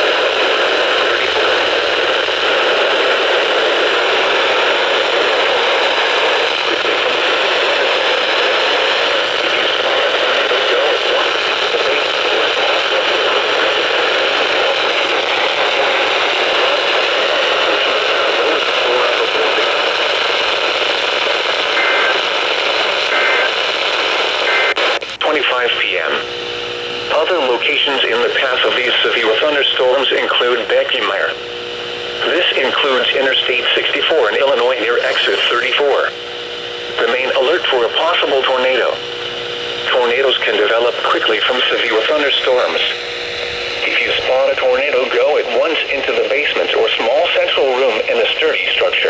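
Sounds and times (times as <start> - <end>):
radio static hiss: 0.0 - 49.0
faint tones: 34.6 - 40.0.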